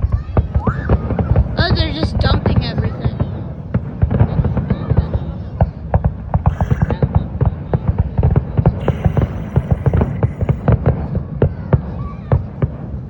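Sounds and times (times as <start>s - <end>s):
fireworks booming and cracking: 8.6s - 11.2s.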